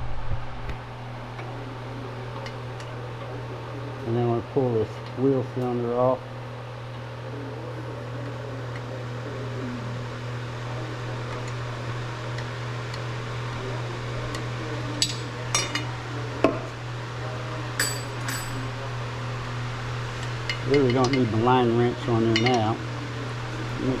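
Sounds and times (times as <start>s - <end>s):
low hum: 0.0s - 2.1s
wrench clinking on metal parts: 17.8s - 18.6s.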